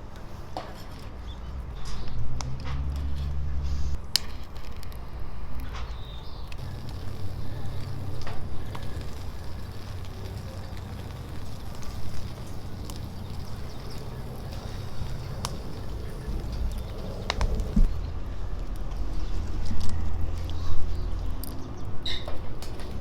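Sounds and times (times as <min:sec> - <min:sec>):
wood fire crackling: 0:01.8 - 0:23.0
low steady rumble: 0:02.2 - 0:21.9
sharp pops: 0:03.7 - 0:18.1.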